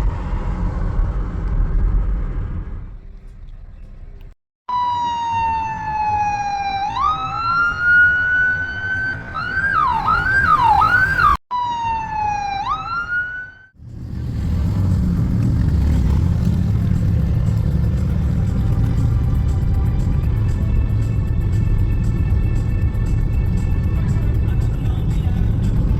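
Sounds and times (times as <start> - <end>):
road traffic rumble: 0.0 - 25.9
emergency vehicle siren: 4.7 - 13.8.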